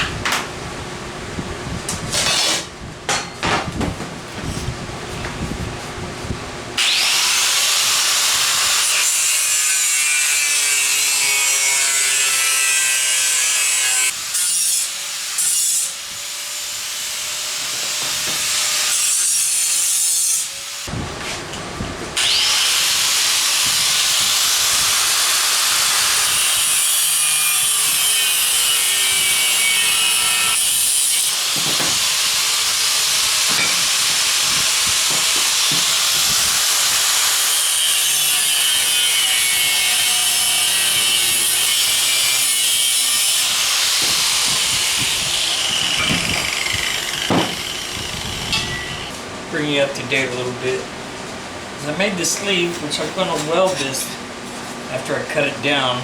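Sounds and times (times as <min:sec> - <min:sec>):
cutting wheel grinding metal: 0:22.2 - 0:49.1.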